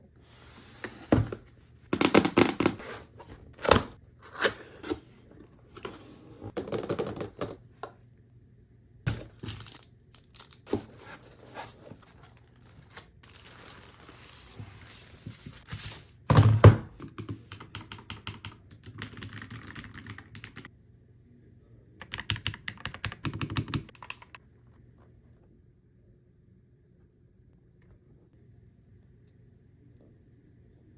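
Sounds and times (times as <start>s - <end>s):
packaging rustling: 9.1s - 15.7s.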